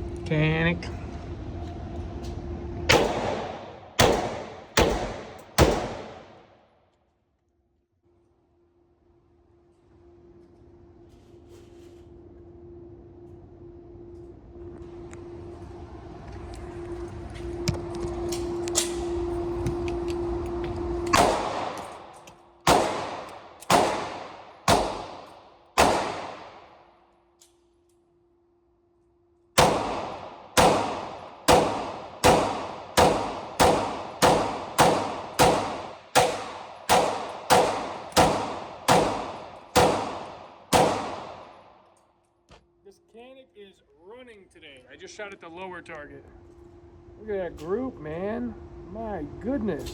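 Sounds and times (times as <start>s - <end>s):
steady hum with rushing noise: 0.0s - 6.7s, 8.7s - 27.4s, 28.0s - 42.0s, 42.6s - 49.9s
pistol shots echoing: 2.9s - 6.6s, 21.1s - 26.9s, 29.6s - 41.7s.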